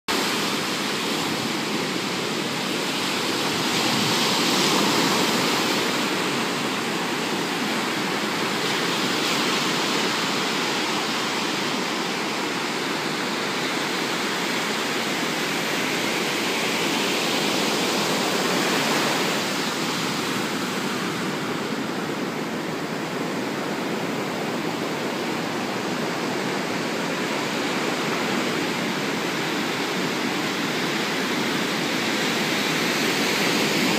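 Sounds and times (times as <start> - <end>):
waves breaking: 0.1 - 33.9.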